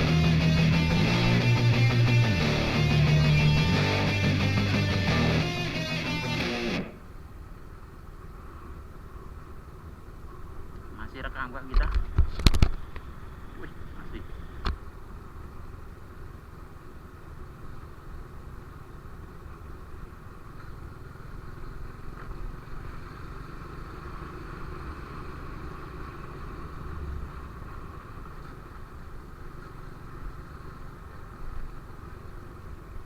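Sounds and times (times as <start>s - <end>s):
motorcycle engine rumbling: 0.0s - 7.4s.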